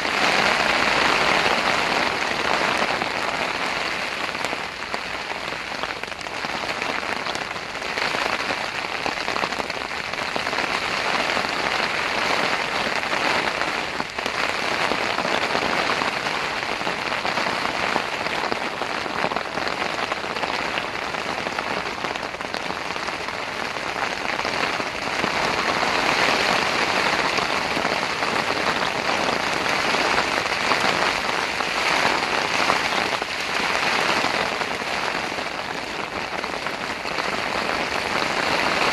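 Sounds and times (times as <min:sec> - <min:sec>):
heavy rain on a tent: 0:00.0 - 0:38.9.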